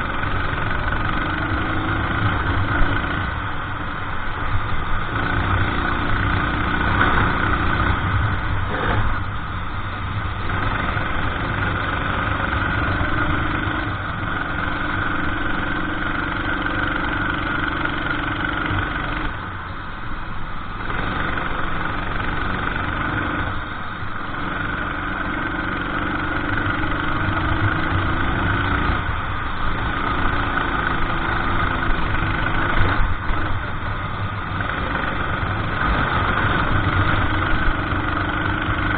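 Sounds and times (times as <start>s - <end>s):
go-kart engine racing: 0.0s - 38.9s.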